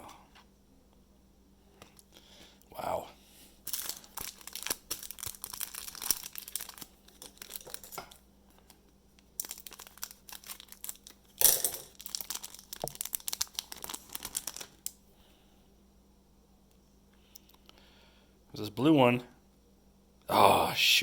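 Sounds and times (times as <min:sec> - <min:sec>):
plastic wrapper crinkling and tearing: 0:03.6 - 0:15.0.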